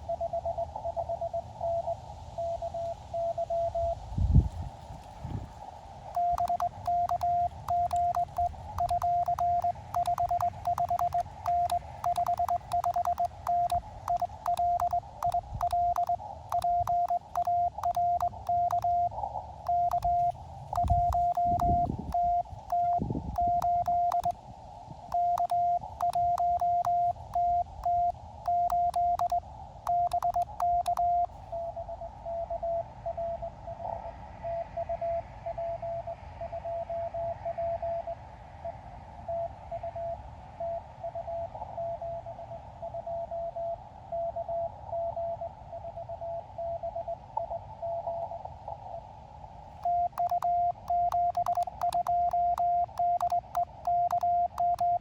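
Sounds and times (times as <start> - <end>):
fainter lower morse signal: 0.0 - 4.0, 6.2 - 24.4, 25.1 - 32.8, 49.8 - 55.0
morse code beeps: 6.2 - 19.1, 19.7 - 24.4, 25.1 - 31.3, 49.8 - 55.0
faint key clicks: 19.7 - 24.3.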